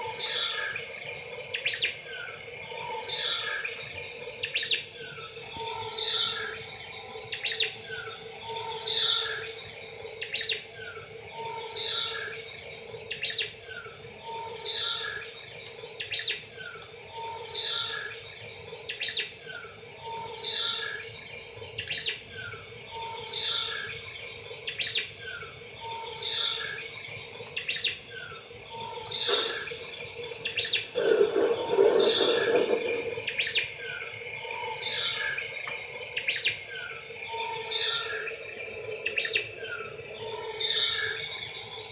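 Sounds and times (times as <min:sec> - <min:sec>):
bird chirps and calls: 0:29.0 - 0:33.5.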